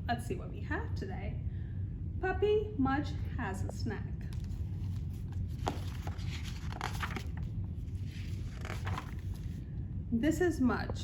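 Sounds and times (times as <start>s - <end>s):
low hum: 0.0s - 11.0s
book pages rustling: 4.2s - 9.6s.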